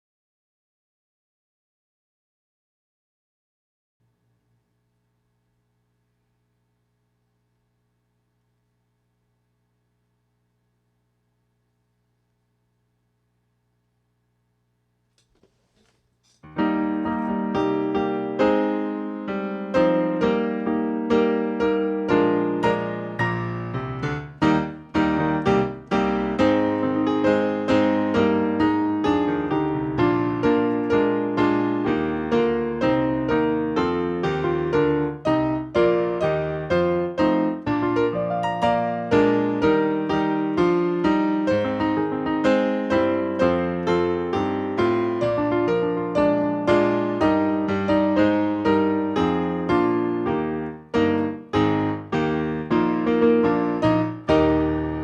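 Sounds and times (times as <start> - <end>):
electric piano playing a song: 16.4 - 55.0.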